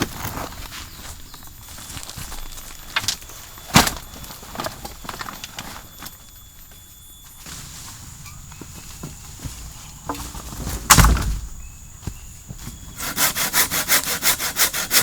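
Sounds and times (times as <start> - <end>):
faint steady high tone: 0.8 - 10.4, 11.5 - 13.0.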